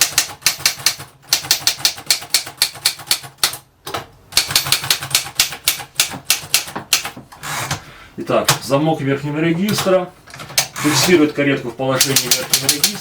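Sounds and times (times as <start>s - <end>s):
typewriter keystroke clacks: 0.0s - 7.2s, 12.0s - 13.0s.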